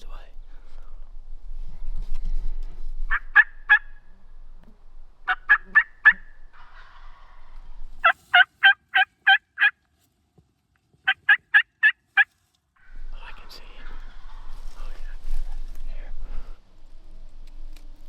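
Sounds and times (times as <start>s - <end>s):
turkey yelping: 3.1s - 4.0s, 5.3s - 6.3s, 8.0s - 9.8s, 11.1s - 12.3s.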